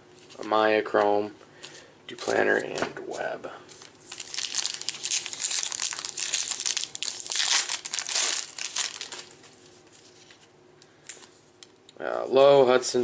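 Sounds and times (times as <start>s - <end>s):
plastic wrapper crinkling: 3.8s - 10.5s.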